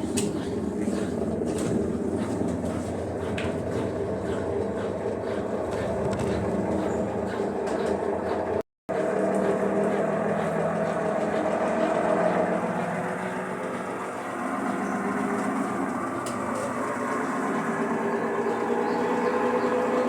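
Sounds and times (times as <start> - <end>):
washing machine spinning: 0.0 - 20.0.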